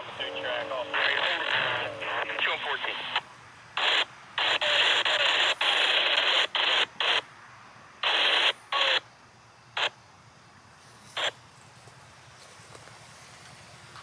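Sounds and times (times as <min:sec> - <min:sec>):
scanner radio static bursts: 0:00.0 - 0:07.3, 0:07.9 - 0:09.1, 0:09.7 - 0:10.0, 0:11.2 - 0:11.4.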